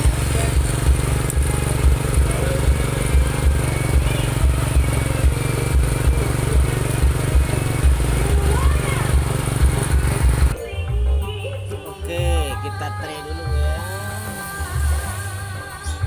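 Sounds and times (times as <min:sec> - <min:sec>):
motorcycle engine idling: 0:00.0 - 0:10.6.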